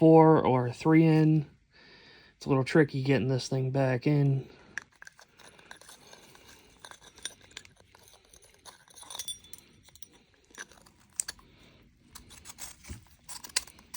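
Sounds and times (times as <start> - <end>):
small metallic clicks and clinks: 4.7 - 11.5, 12.1 - 13.9.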